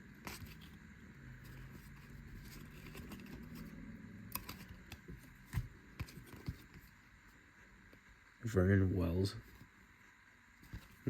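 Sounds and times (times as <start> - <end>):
faint low hum: 0.0 - 11.0
cards sliding: 1.4 - 3.7.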